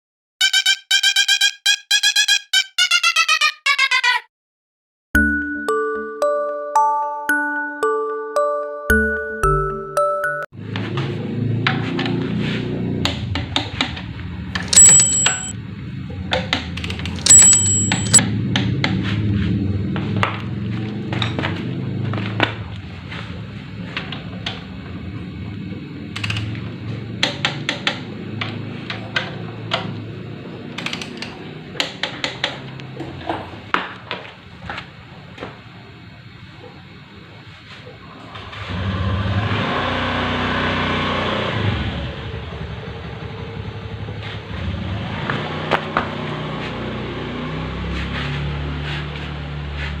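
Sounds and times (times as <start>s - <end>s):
metal tools clicking and knocking: 14.6s - 15.5s, 17.2s - 18.2s.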